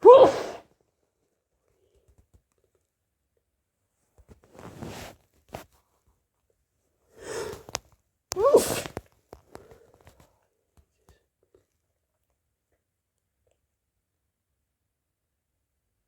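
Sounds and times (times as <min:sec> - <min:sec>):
person sneezing: 0:00.0 - 0:00.6, 0:08.4 - 0:09.0.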